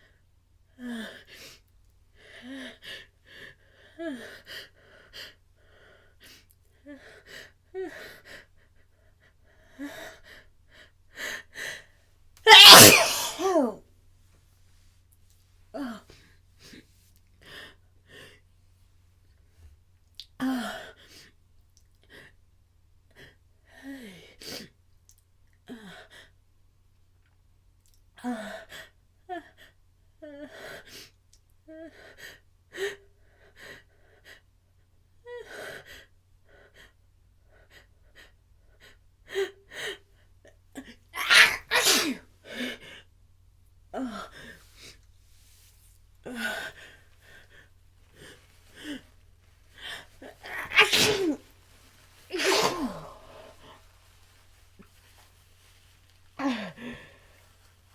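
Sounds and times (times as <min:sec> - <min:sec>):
person sneezing: 0:12.5 - 0:13.8, 0:41.2 - 0:42.2, 0:50.3 - 0:51.5, 0:52.3 - 0:53.8.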